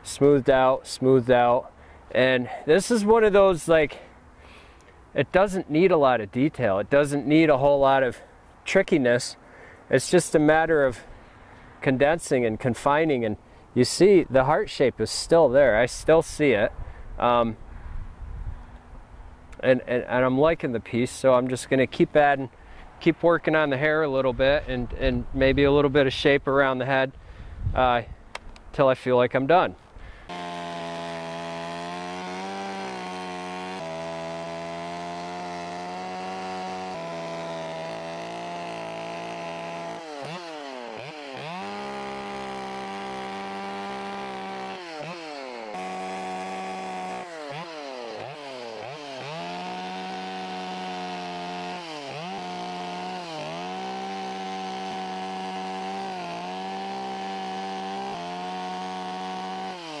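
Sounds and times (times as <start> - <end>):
chainsaw carving wood: 30.1 - 60.0.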